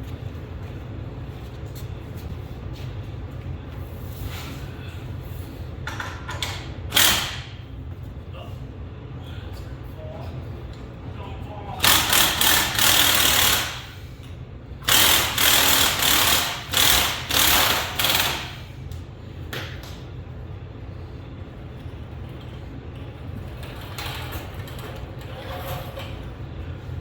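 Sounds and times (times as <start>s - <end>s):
steady low hum: 0.0s - 27.0s
power tool running in bursts: 11.8s - 13.9s, 14.8s - 18.6s.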